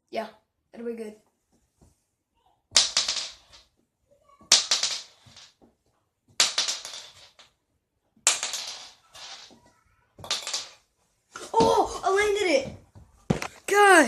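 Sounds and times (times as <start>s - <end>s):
shotgun shell landing and clattering: 2.8s - 3.6s, 4.5s - 5.4s, 6.4s - 7.5s, 8.3s - 9.6s, 10.2s - 10.8s.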